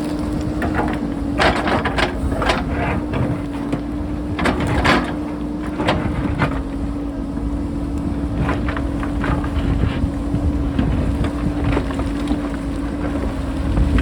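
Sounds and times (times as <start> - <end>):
backhoe engine running: 0.0 - 14.0.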